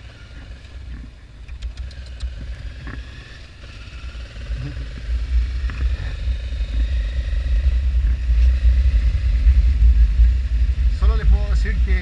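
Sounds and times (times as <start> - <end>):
motorcycle engine running: 0.0 - 12.0
wind buffeting microphone: 4.2 - 12.0.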